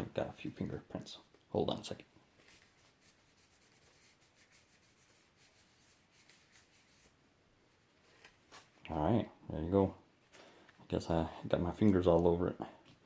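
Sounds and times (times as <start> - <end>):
wipe rubbing camera body: 2.4 - 7.1.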